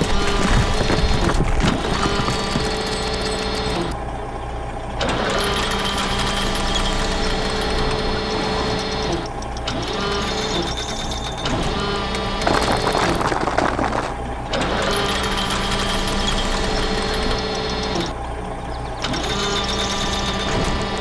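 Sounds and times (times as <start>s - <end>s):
fast mechanical rattle: 0.0s - 4.0s, 12.2s - 17.5s.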